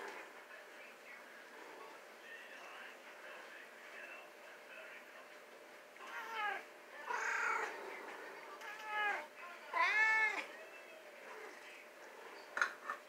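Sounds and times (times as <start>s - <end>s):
cats meowing: 6.0s - 7.9s, 8.6s - 10.6s.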